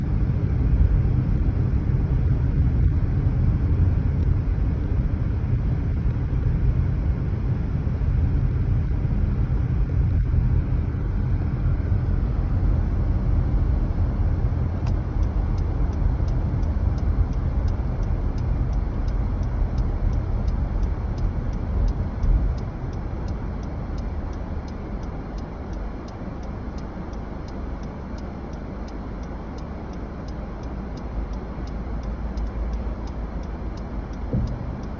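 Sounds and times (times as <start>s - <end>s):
car road and engine rumble: 0.0s - 34.9s
regular ticking: 14.8s - 34.9s.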